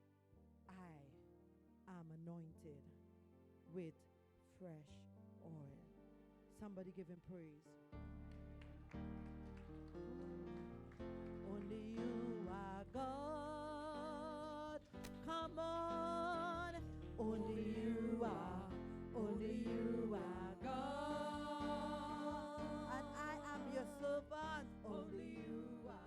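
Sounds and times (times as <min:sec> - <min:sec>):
person singing: 0:11.4 - 0:14.5, 0:15.2 - 0:26.0.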